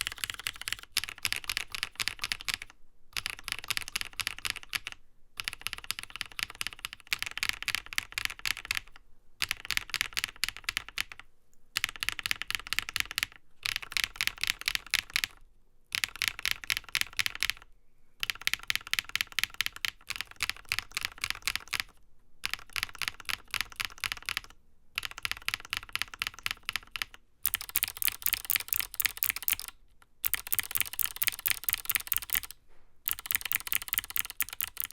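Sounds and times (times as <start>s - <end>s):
mechanical keyboard typing: 0.0s - 17.6s, 18.2s - 34.9s.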